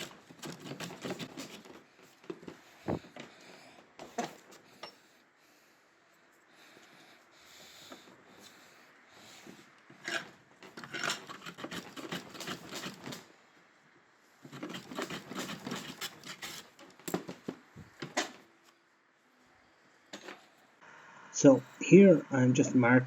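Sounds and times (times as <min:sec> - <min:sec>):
hand plane shaving wood: 0:00.0 - 0:02.0, 0:10.0 - 0:13.2, 0:14.4 - 0:17.0.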